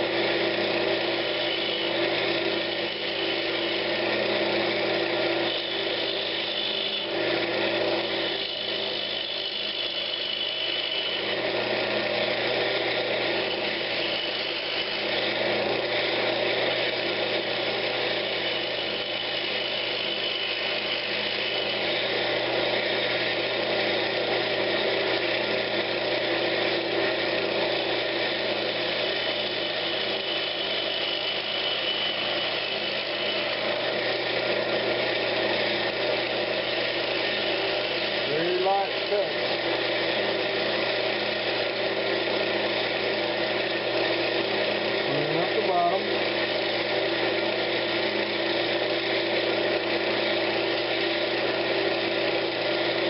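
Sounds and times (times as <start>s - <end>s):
turning tool scraping wood: 0.0s - 53.0s
wood lathe motor hum: 0.0s - 53.0s.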